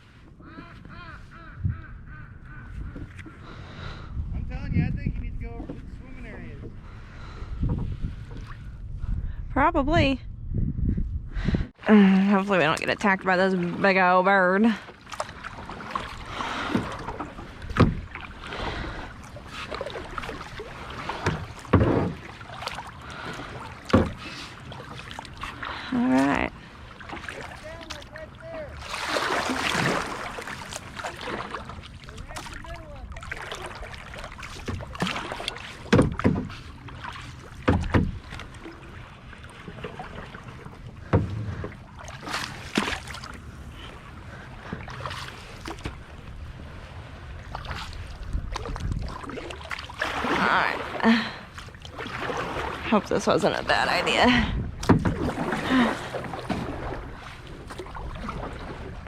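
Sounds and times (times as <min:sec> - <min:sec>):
wind rumble on microphone: 0:00.0 - 0:13.2, 0:15.7 - 0:22.3, 0:45.7 - 0:50.8, 0:52.4 - 0:59.0
kayak paddle splashing in water: 0:12.4 - 0:59.0.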